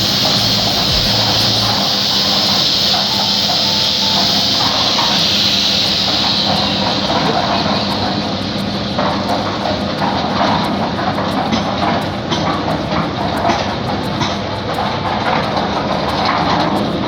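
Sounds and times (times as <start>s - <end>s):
concrete mixer motor hum: 0.0s - 11.5s
mixer rattling and churning: 0.0s - 17.0s.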